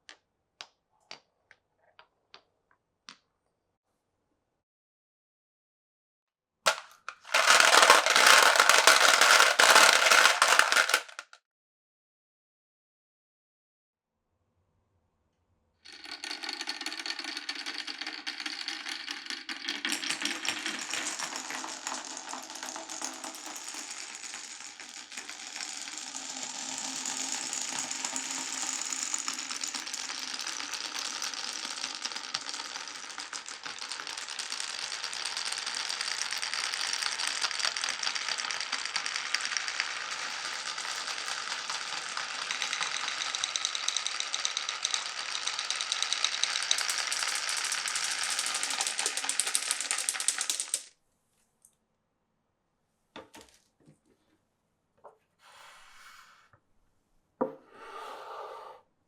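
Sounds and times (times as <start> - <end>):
marbles rattling down wooden run: 6.7 - 11.3, 15.9 - 50.9.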